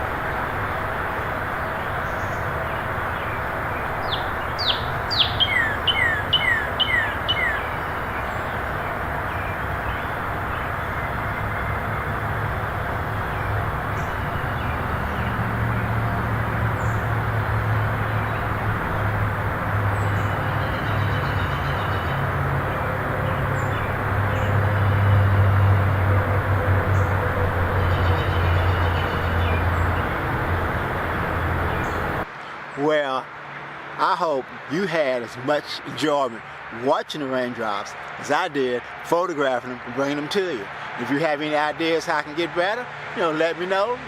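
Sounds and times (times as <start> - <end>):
outdoor background hiss: 0.0 - 44.0
songbird whistling notes: 4.0 - 8.6.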